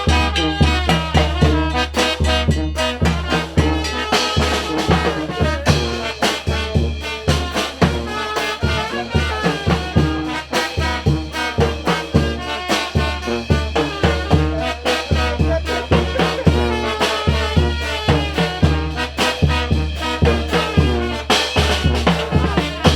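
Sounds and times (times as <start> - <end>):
drums: 0.0 - 22.9
trumpets and trombones: 0.0 - 22.9
deep bass beat: 13.2 - 16.9.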